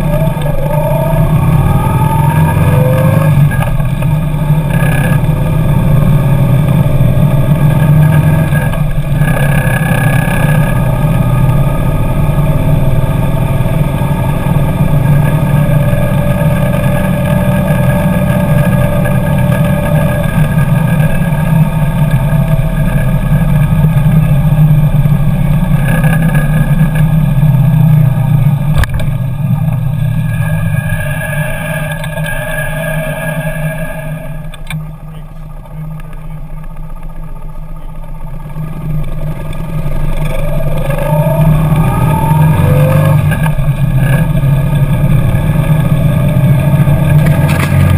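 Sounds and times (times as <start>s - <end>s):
motorcycle engine running: 0.0s - 47.9s.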